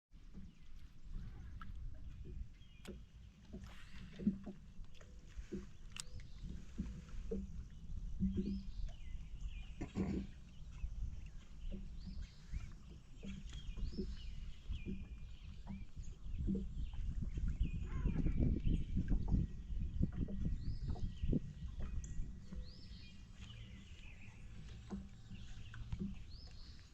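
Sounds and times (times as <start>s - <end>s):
low wind rumble on microphone: 0.2s - 26.9s
birds chirping: 0.6s - 19.4s, 20.0s - 26.9s.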